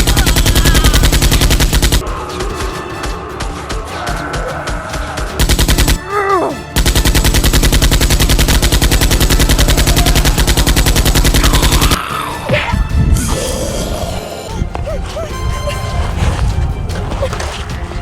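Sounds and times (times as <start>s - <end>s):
short cry: 0.0s - 1.1s
machine-gun fire: 0.0s - 4.0s, 4.8s - 6.0s, 6.7s - 12.0s.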